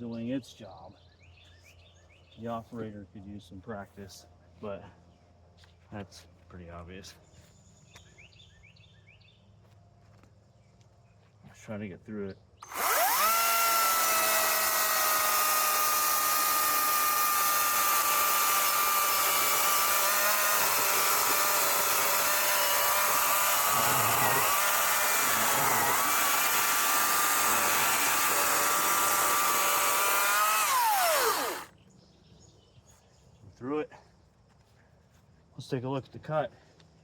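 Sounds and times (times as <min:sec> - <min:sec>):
electric chainsaw cutting log: 0:12.6 - 0:31.7.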